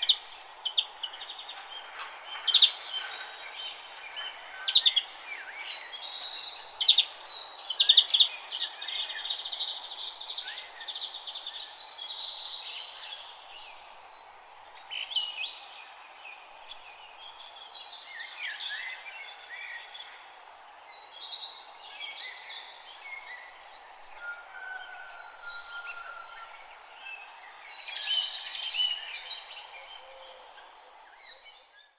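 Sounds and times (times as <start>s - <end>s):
songbirds chirping and trilling: 0.0s - 31.9s
steady background hiss: 25.1s - 31.6s.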